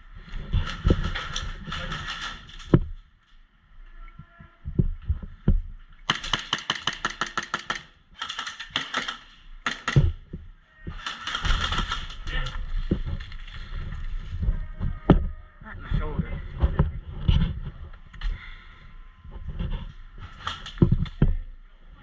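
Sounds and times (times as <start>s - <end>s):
airsoft guns firing bursts: 6.1s - 10.2s, 11.0s - 12.4s.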